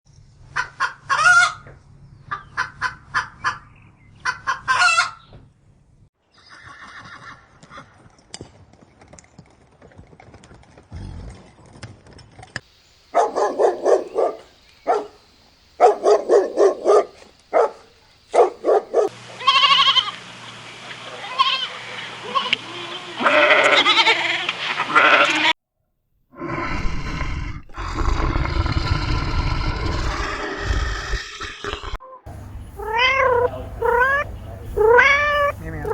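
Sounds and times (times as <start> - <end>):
farm animal calls: 0.5 - 5.4, 13.1 - 15.2, 15.8 - 20.2, 21.1 - 25.5, 32.0 - 35.9
goats bleating: 19.4 - 20.2, 21.2 - 25.5, 32.3 - 35.9.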